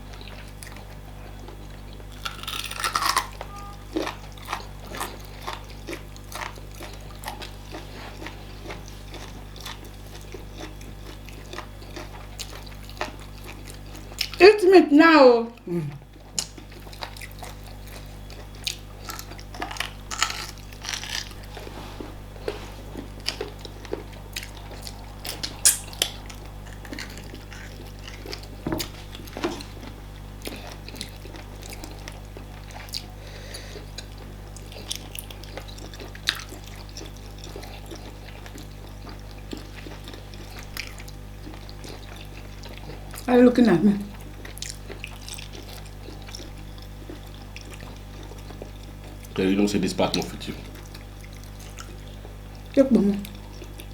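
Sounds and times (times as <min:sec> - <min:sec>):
chewing and wet smacks: 0:00.0 - 0:14.4, 0:15.6 - 0:43.3, 0:44.0 - 0:53.9
low hum: 0:19.0 - 0:32.6.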